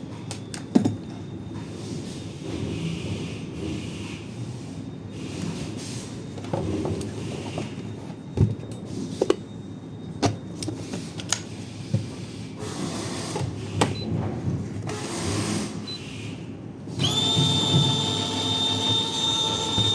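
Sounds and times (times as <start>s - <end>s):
coffee grinder motor whining: 17.0s - 19.9s.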